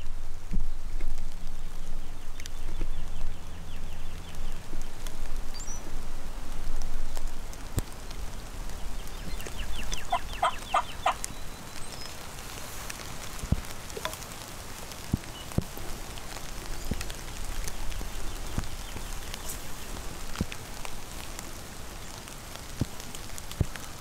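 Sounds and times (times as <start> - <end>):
steady rain hiss: 0.0 - 24.0
turkey calling: 9.2 - 11.9.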